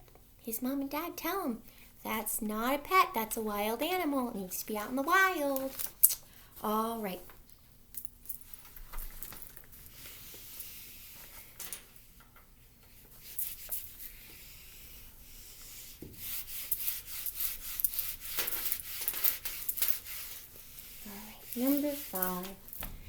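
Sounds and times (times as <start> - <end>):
scratching strokes on whiteboard: 12.9 - 23.0.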